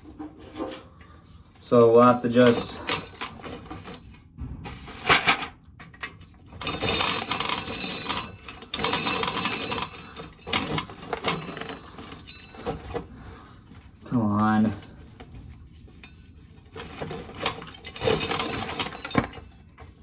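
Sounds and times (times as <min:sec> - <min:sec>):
corn kernels clicking and rattling: 0:06.0 - 0:15.2.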